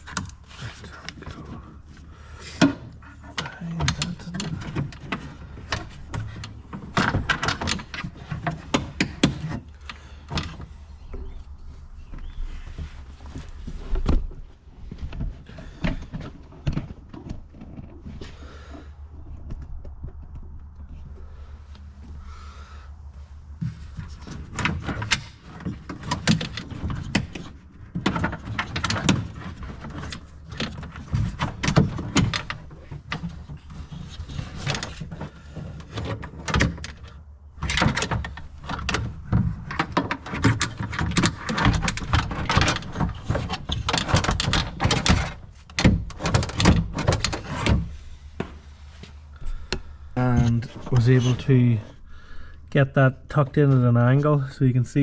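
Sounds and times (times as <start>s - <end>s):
door lock clicks and rattles: 35.8s - 47.9s.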